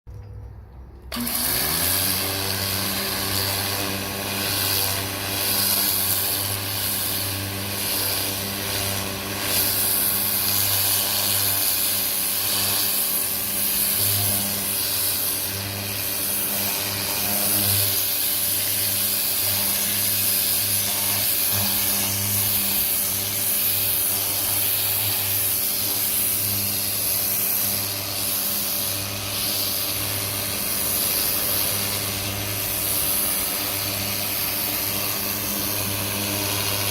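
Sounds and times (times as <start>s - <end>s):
pressure washer motor humming: 1.0s - 36.9s
water spraying hiss: 20.0s - 36.9s.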